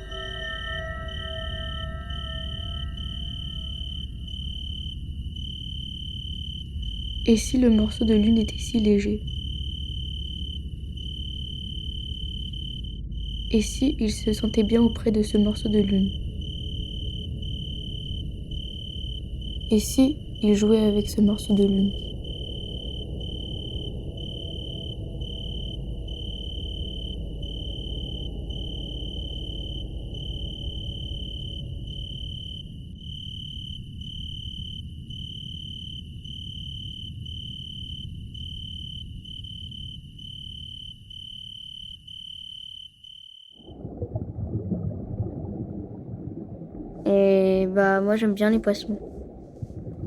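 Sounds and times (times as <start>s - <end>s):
low rumble: 0.0s - 33.6s, 43.6s - 50.0s
pulsing cricket-like trill: 0.0s - 44.0s.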